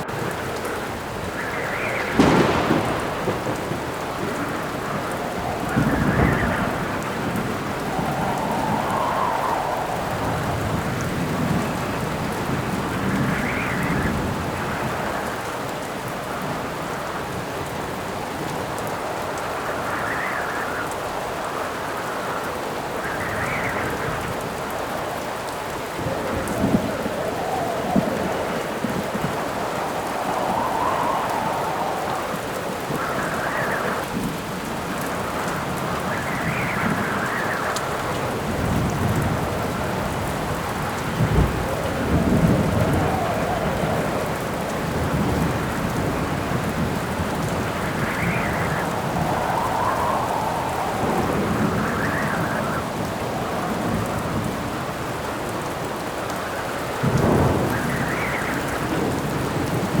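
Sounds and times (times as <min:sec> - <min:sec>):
thunder rumbling: 0:00.0 - 0:22.1, 0:22.8 - 1:00.0
steady rain: 0:00.0 - 1:00.0
wind howling in gusts: 0:00.0 - 1:00.0.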